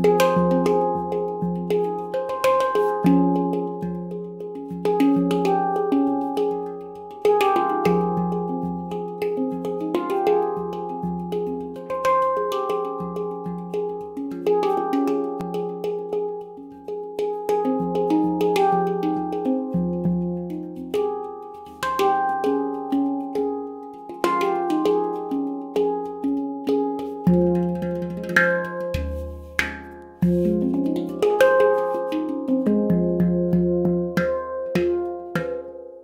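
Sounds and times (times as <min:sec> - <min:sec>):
handpan melody: 0:00.0 - 0:36.0
low ringing handpan note: 0:24.2 - 0:36.0.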